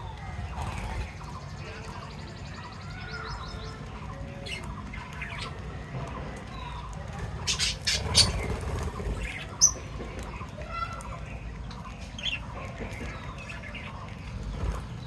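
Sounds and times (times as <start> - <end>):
birds chirping and squawking: 0.0 - 15.0.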